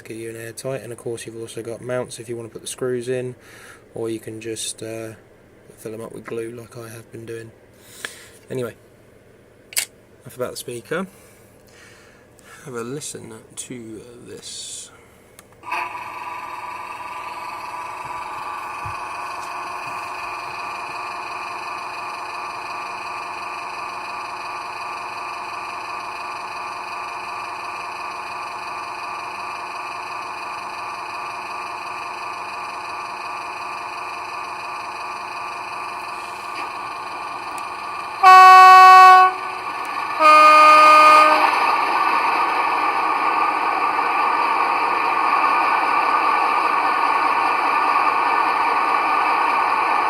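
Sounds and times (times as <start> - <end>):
diesel engine sound: 15.4 - 50.0
train horn blasts: 38.2 - 41.6.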